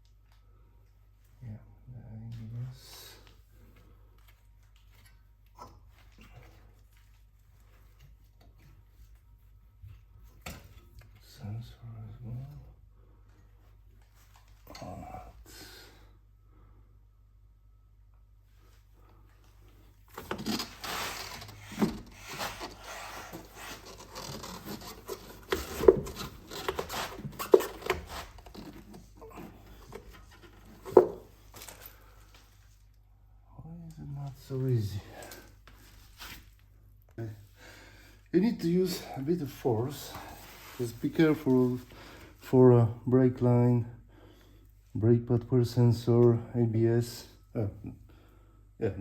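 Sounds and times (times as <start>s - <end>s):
low steady hum: 0.0s - 49.0s
metal parts scraping and rubbing: 20.2s - 28.8s.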